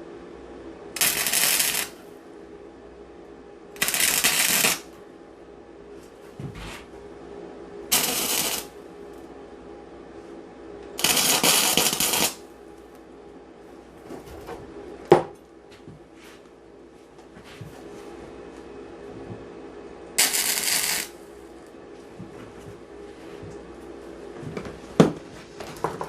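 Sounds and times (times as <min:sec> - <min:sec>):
crackling welding bursts: 0:01.0 - 0:02.0, 0:03.8 - 0:04.9, 0:07.9 - 0:08.8, 0:11.0 - 0:12.4, 0:20.2 - 0:21.2.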